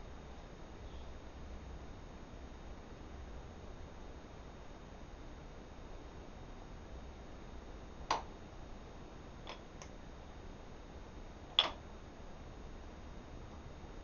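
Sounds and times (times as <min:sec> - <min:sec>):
tools and wood clicking: 0:09.5 - 0:09.9.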